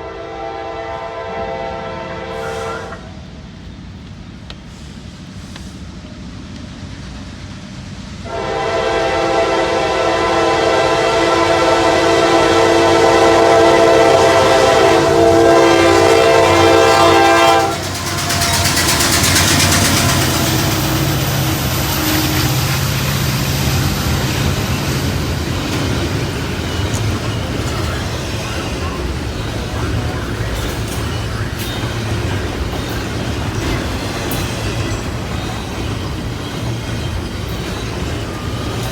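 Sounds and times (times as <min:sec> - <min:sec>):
train horn: 0:00.0 - 0:03.2, 0:08.2 - 0:32.0
train wheel noise: 0:00.0 - 0:38.9
locomotive engine rumble: 0:00.4 - 0:38.9.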